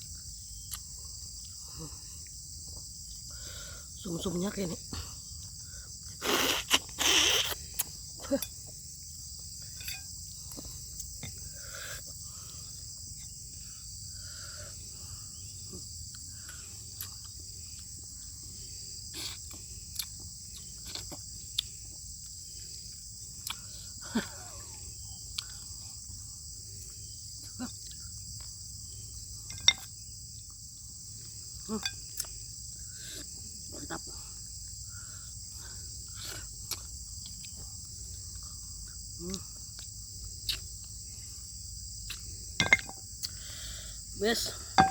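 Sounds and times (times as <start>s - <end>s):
crickets chirring: 0.0s - 44.9s
person slurping soup: 6.2s - 7.6s.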